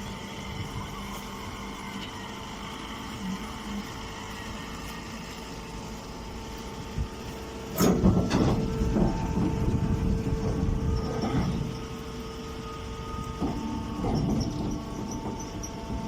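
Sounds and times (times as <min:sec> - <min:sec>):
baling machine humming: 0:00.0 - 0:16.0
machine clank: 0:07.7 - 0:09.6.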